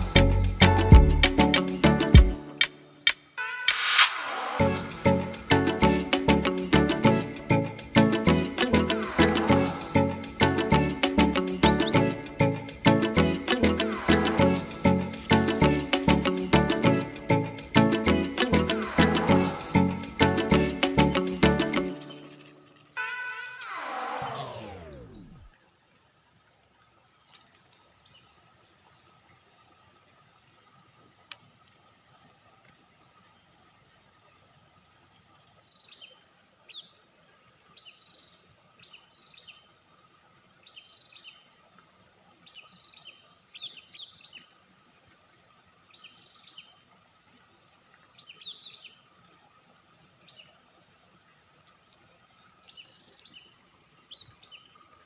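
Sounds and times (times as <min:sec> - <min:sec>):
insects droning: 0:00.0 - 0:55.0
birds chirping: 0:03.4 - 0:25.5
sharp bird calls: 0:11.2 - 0:12.2.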